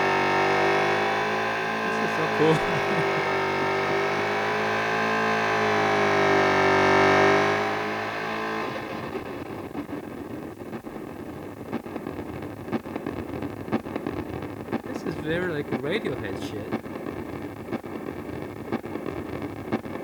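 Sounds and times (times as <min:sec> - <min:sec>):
scratchy crackling with clicks: 0:09.6 - 0:20.0.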